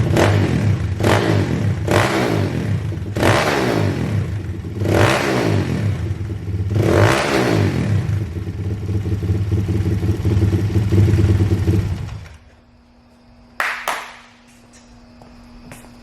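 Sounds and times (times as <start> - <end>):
motorbike engine revving: 0.0 - 12.4.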